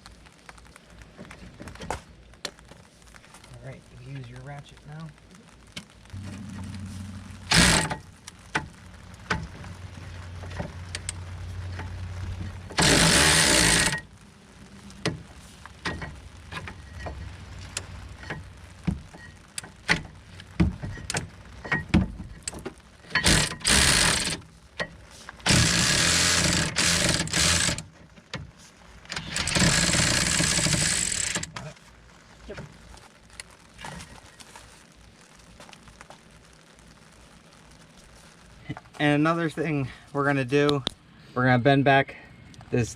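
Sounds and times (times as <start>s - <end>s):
loud rushing bursts: 6.1s - 9.2s
ratchet and wrench clicking: 12.8s - 14.0s.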